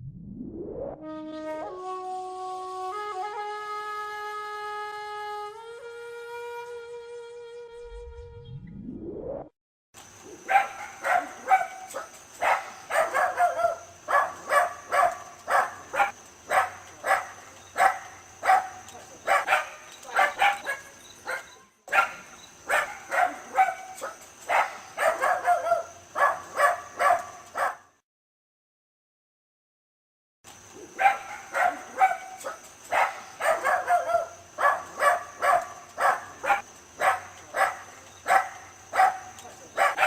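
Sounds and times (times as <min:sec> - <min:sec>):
dog barking sharply: 0:10.5 - 0:27.9, 0:31.0 - 0:40.0.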